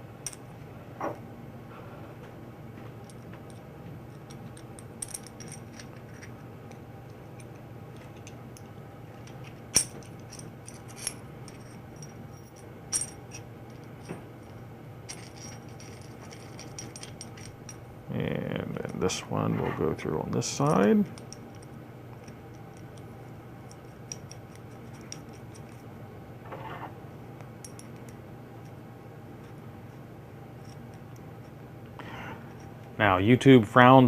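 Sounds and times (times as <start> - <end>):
faint steady hum: 0.0 - 34.0
metal parts clinking and clicking: 3.0 - 17.8, 20.6 - 25.8, 27.6 - 28.8.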